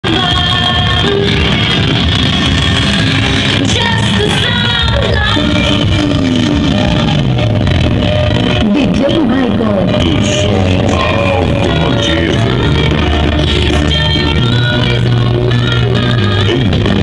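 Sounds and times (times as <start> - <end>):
heavy pulsing bass music: 0.0 - 17.0
person singing: 9.9 - 17.0.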